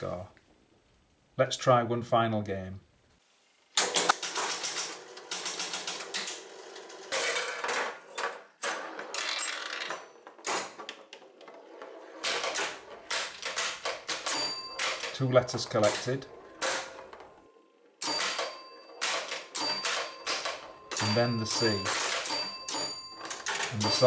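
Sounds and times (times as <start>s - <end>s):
relays and score reels clattering: 3.8s - 17.4s, 18.0s - 24.0s
pinball mechanical clicking: 3.8s - 24.0s
bell ringing: 14.1s - 24.0s.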